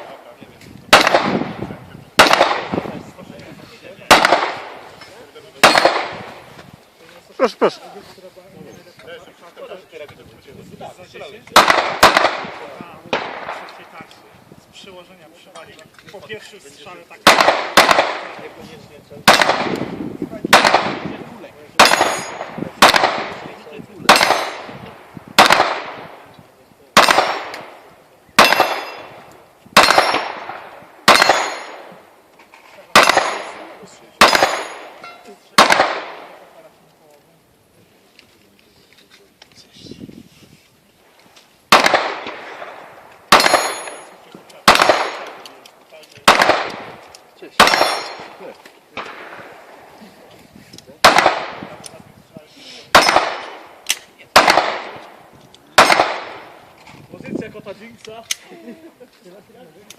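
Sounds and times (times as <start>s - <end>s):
pistol shots echoing: 0.9s - 1.6s, 2.2s - 3.0s, 4.0s - 4.9s, 5.6s - 6.4s, 11.5s - 13.8s, 17.2s - 18.6s, 19.2s - 21.2s, 21.8s - 26.3s, 26.9s - 32.0s, 32.9s - 36.5s, 41.7s - 45.6s, 46.2s - 49.8s, 51.0s - 51.8s, 52.9s - 55.2s, 55.8s - 56.6s.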